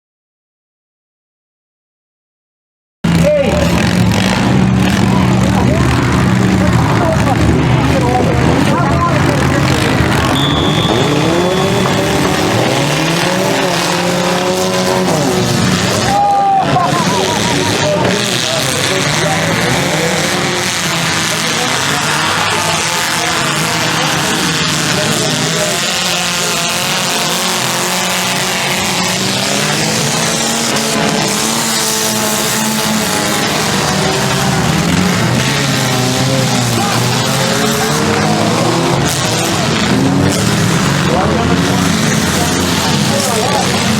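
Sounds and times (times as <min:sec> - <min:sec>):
car engines revving: 0:03.0 - 0:43.9
high squeal: 0:10.2 - 0:12.7.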